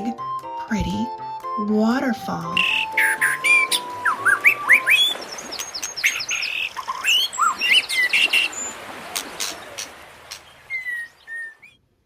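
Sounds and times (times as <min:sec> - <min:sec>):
songbirds chirping and trilling: 0:02.3 - 0:11.8.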